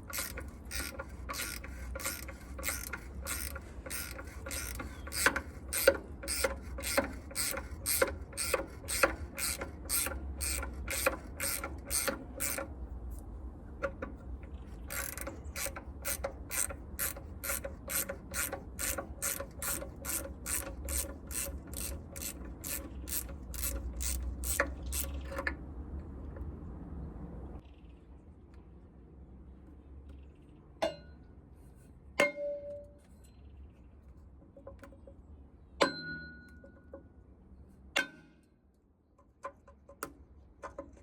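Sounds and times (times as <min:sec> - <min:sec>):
ratchet wrench clicking: 0:00.0 - 0:13.2, 0:13.8 - 0:25.6.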